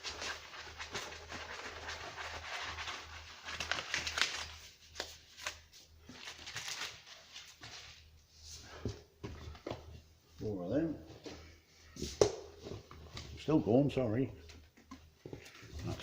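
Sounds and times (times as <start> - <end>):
packaging rustling and crinkling: 0.0 - 8.1, 15.2 - 16.0.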